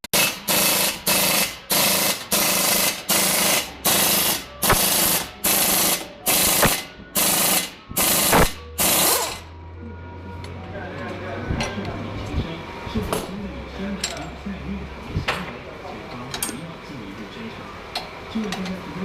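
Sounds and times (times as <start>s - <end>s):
air tool bursts: 0.2s - 9.4s.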